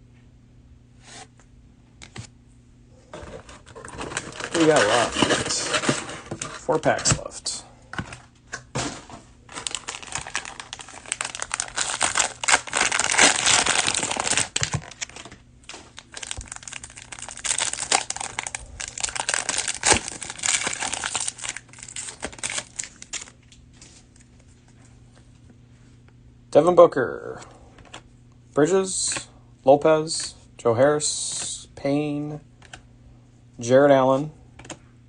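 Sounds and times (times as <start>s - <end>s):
plastic wrapper crinkling: 3.5s - 6.5s, 9.5s - 23.6s.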